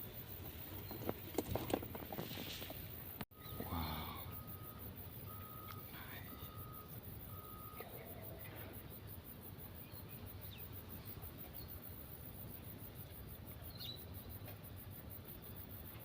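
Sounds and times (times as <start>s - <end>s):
insect pulsing call: 0.0s - 16.0s
short steady beep: 3.3s - 8.2s
faint high chirps: 3.3s - 11.8s.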